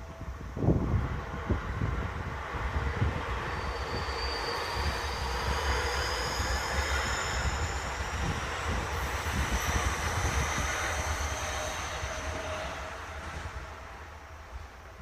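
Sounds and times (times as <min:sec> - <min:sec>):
train wheels rumbling on rail: 0:00.0 - 0:15.0
thin high whine: 0:03.0 - 0:13.8.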